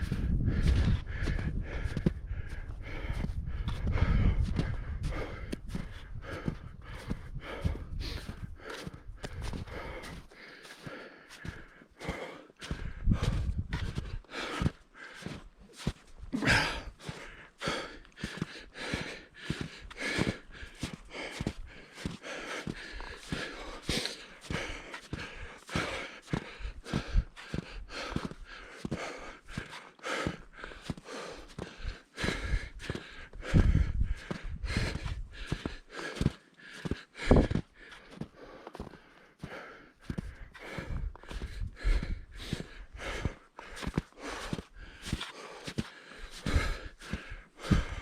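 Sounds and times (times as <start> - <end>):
hard breathing: 0.0 - 48.0
footsteps in snow: 4.5 - 33.2, 42.4 - 48.0.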